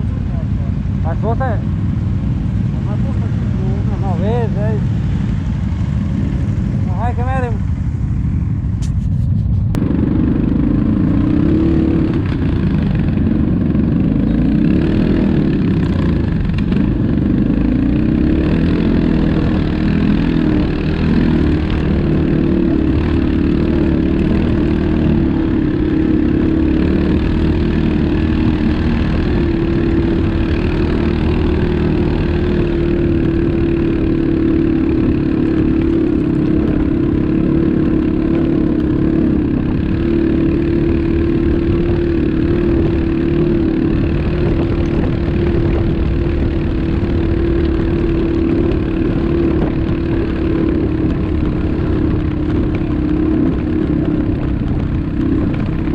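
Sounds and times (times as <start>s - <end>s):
atv engine running: 0.0s - 55.9s.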